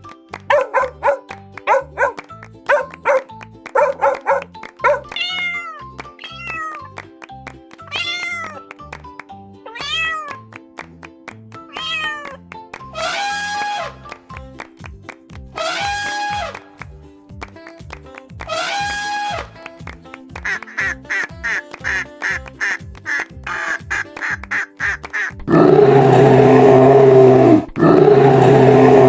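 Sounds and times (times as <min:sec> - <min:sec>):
background music with steady beat: 0:00.0 - 0:25.6
dog barking: 0:00.5 - 0:05.1
cat meowing: 0:05.1 - 0:06.9, 0:07.9 - 0:08.6, 0:09.7 - 0:10.4, 0:11.7 - 0:12.4.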